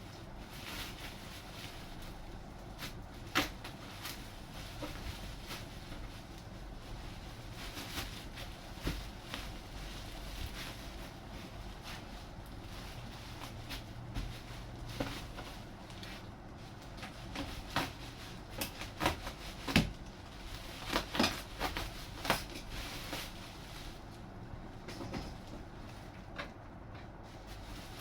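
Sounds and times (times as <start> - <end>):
packaging knocks and scrapes: 7.1 - 24.1, 24.7 - 28.0.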